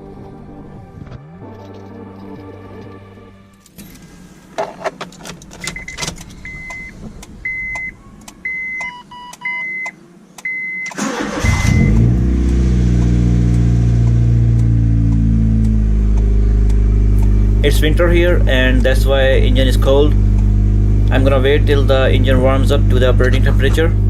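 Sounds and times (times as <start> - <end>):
clicks: 1.0 - 11.4
car engine cranking: 1.0 - 24.0
short electronic beeps: 5.7 - 12.1
loud car engine idling: 11.0 - 24.0.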